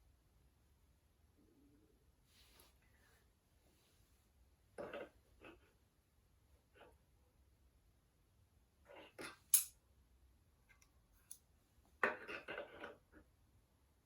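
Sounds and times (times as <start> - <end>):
metal tools being handled: 9.2 - 9.8
sharp metal clink: 9.4 - 9.8.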